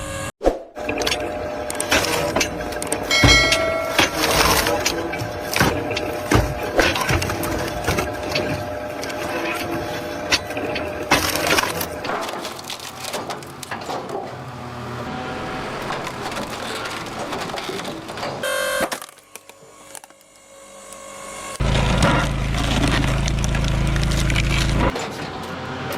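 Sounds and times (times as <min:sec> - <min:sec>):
press working noise: 0:00.0 - 0:12.0
wood cracking under a press: 0:04.1 - 0:14.6, 0:15.7 - 0:20.5, 0:21.6 - 0:25.5.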